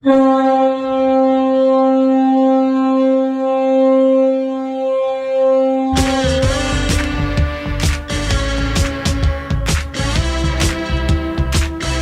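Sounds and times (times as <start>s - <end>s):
goal horn blast: 0.0s - 4.0s, 5.8s - 12.0s
goal song music: 5.9s - 12.0s.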